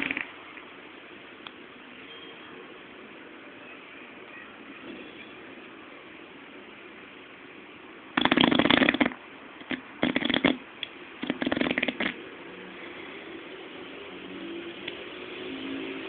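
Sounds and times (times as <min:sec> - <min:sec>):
dog snoring with rattling snorts: 0:00.0 - 0:00.2, 0:08.2 - 0:10.6, 0:11.2 - 0:12.2
quiet breathing: 0:12.6 - 0:13.6.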